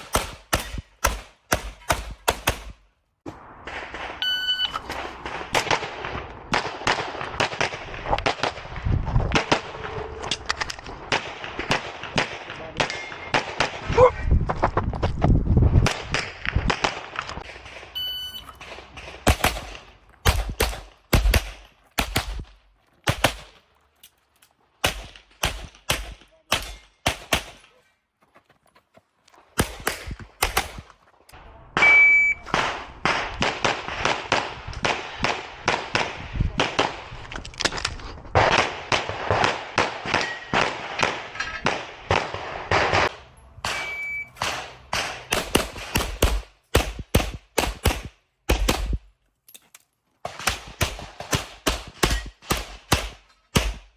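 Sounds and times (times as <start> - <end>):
short high electronic beeps: 4.2 - 4.8, 18.0 - 18.6, 43.8 - 44.4
handgun shots: 24.8 - 27.7, 43.7 - 49.0, 50.3 - 53.9.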